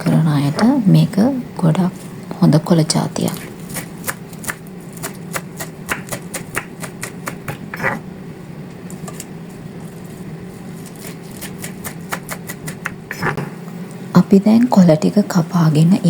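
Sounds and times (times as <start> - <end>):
knife chopping on cutting board: 3.7 - 8.0, 10.9 - 13.5.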